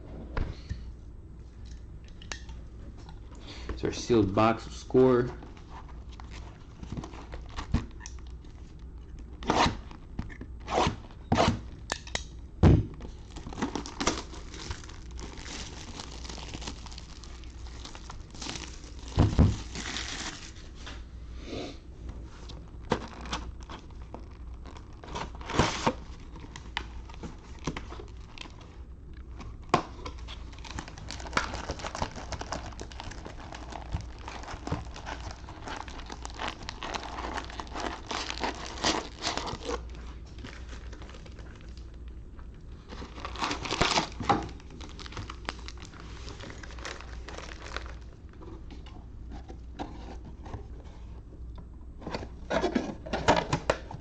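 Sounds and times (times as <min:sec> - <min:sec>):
plastic wrapping tearing and crinkling: 0:13.1 - 0:20.8, 0:22.6 - 0:42.1, 0:42.8 - 0:48.4.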